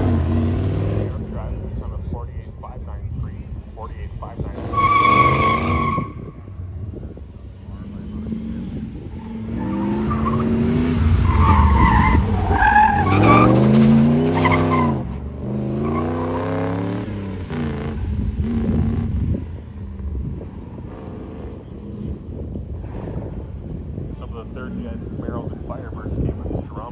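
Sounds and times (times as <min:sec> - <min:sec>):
tires squealing: 0:00.0 - 0:01.7, 0:04.4 - 0:19.0
car engine revving: 0:00.0 - 0:25.7.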